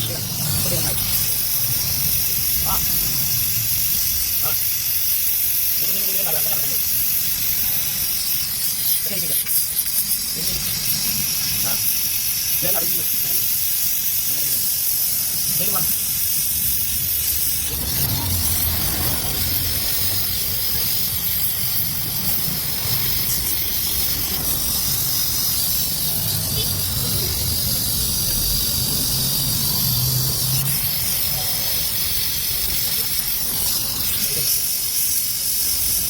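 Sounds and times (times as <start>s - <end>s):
welding torch flame hissing: 0.0s - 36.0s
low rumble: 16.7s - 31.1s.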